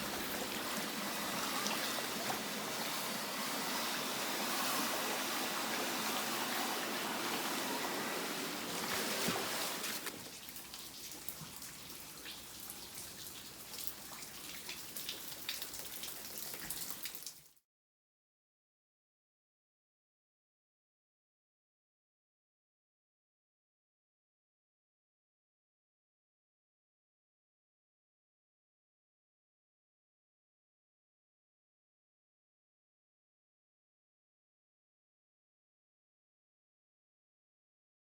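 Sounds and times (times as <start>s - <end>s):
water drips: 0.0s - 3.6s, 8.8s - 17.6s
water running and trickling: 0.0s - 17.6s.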